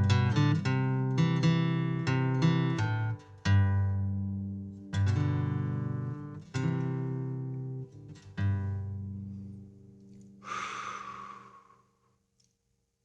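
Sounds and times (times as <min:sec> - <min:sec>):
guitar chords strummed: 0:00.0 - 0:09.7.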